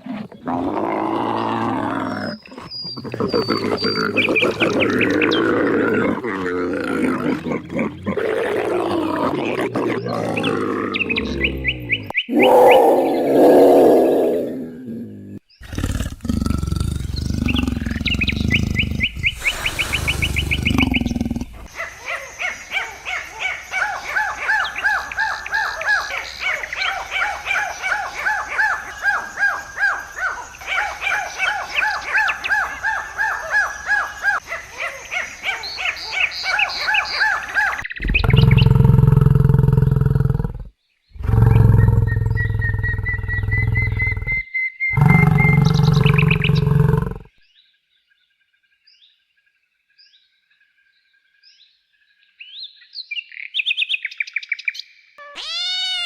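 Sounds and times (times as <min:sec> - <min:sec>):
animal chirping calls: 0:01.8 - 0:14.6, 0:15.6 - 0:40.0, 0:41.2 - 0:47.3, 0:55.2 - 0:56.0.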